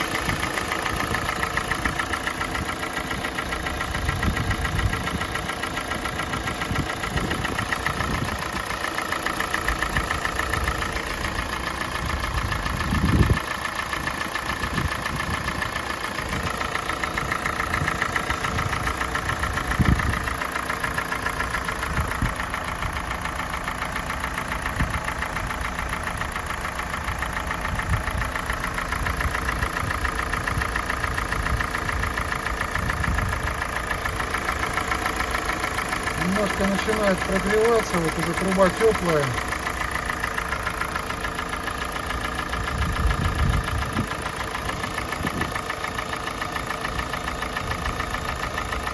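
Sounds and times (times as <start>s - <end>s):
rapid ringing engine knock: 0.0s - 36.6s
car engine idling: 0.0s - 48.9s.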